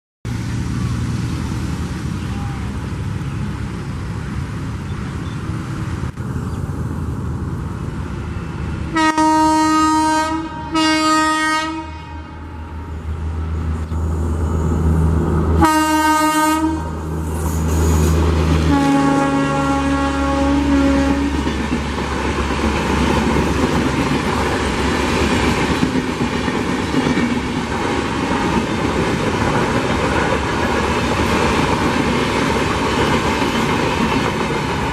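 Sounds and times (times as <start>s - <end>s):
train rumbling at speed: 0.3s - 34.9s
locomotive horn blasts: 8.9s - 12.7s, 15.6s - 17.0s, 18.7s - 21.4s.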